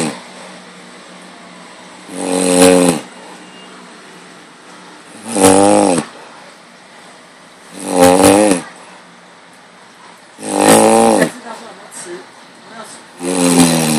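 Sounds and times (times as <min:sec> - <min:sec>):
loud snoring: 0:00.0 - 0:00.3, 0:02.0 - 0:03.2, 0:05.1 - 0:06.2, 0:07.7 - 0:08.8, 0:10.4 - 0:11.4, 0:13.2 - 0:13.9.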